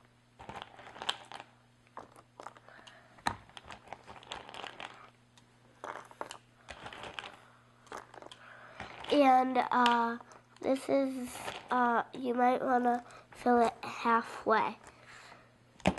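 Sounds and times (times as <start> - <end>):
crayon pieces clicking and rustling: 0.4 - 5.1, 5.8 - 11.9.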